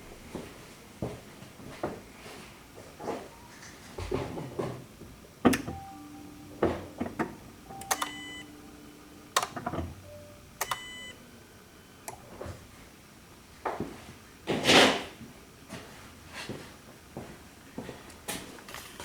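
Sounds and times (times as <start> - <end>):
faint low hum: 0.0 - 14.1
electronic warning beeps: 5.7 - 11.2
ignition key clicks: 7.0 - 8.5, 9.3 - 11.1.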